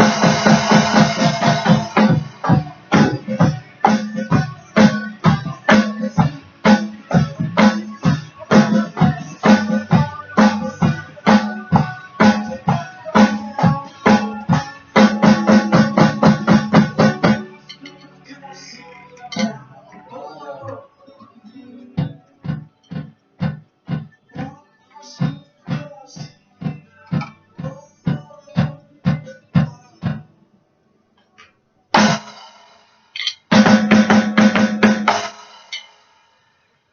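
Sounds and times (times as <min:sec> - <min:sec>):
rapid drum roll: 0:00.0 - 0:03.3
drum kit playing: 0:00.0 - 0:18.0, 0:22.0 - 0:24.5, 0:25.2 - 0:30.2, 0:32.0 - 0:36.0
recorded rock song: 0:00.0 - 0:30.3, 0:32.0 - 0:35.9.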